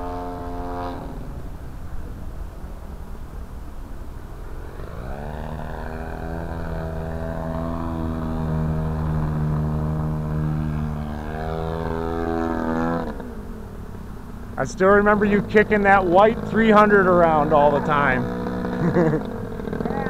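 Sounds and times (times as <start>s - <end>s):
model airplane engine droning: 0.0s - 20.0s.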